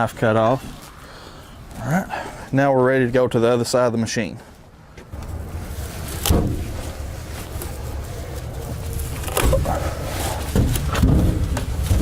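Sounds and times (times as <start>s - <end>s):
footsteps: 4.4s - 12.0s
steady low rumble: 5.0s - 12.0s.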